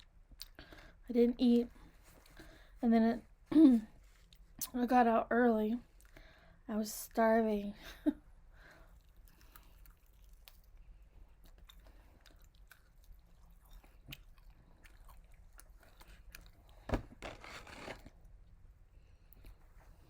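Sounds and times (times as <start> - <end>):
person chewing crunchy food: 8.9 - 18.1.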